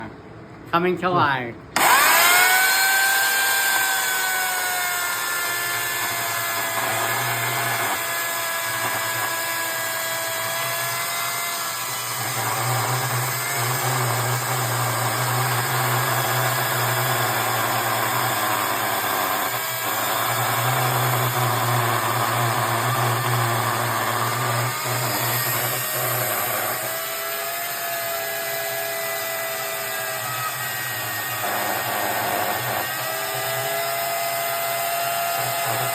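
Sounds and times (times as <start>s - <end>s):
electric chainsaw motor whine: 1.8s - 35.9s.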